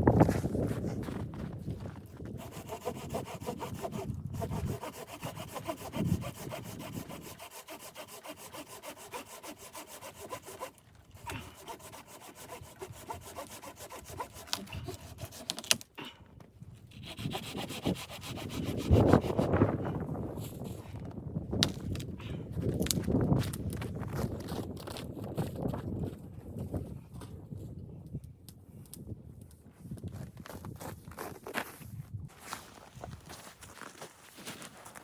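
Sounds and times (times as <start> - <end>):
hand saw cutting wood: 2.2 - 16.0, 16.9 - 20.0.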